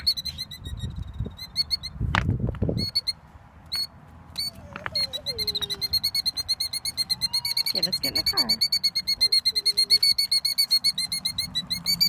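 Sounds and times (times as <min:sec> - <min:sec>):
bird alarm calls: 0:02.8 - 0:12.0.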